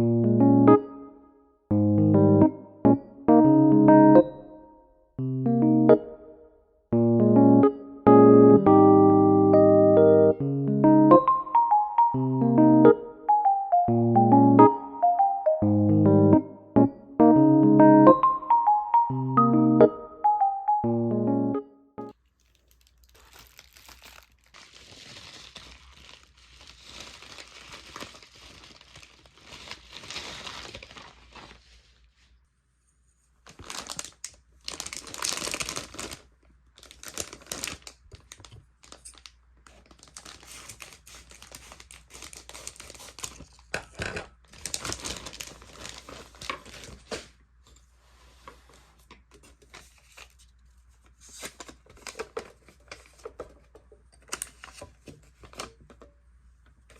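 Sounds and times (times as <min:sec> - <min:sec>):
crinkling and rustling: 0:22.1 - 0:32.4, 0:33.3 - 0:56.9.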